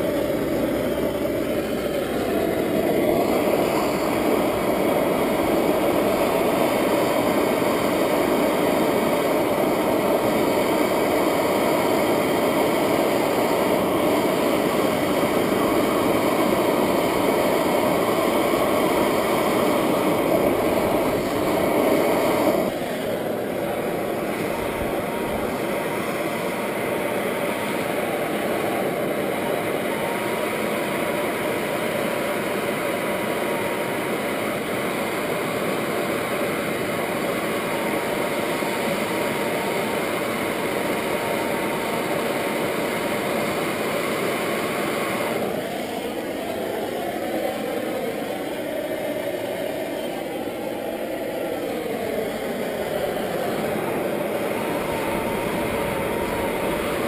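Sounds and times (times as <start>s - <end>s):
torch flame roaring: 0.0s - 57.0s.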